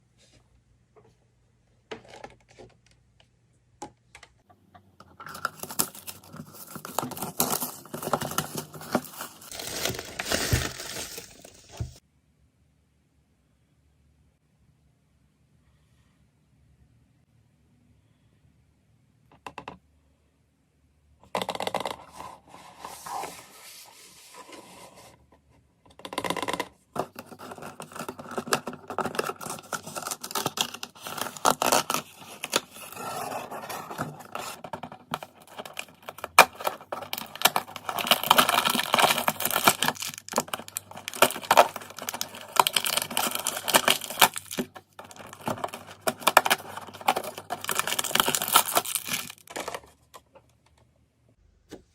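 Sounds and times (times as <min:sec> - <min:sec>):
plastic and paper tearing: 0:05.3 - 0:12.0, 0:27.0 - 0:49.8.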